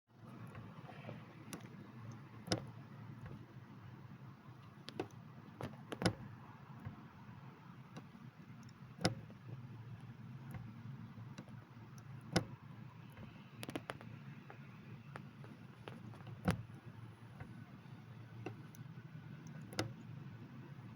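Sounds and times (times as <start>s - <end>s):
clutch pedal clicking: 0.2s - 20.9s.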